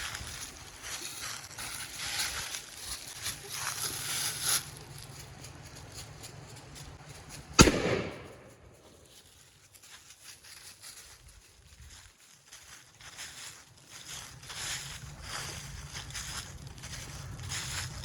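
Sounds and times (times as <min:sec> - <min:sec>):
faint rustling outdoors: 0:00.0 - 0:18.0
gunshot with echo: 0:07.6 - 0:08.9.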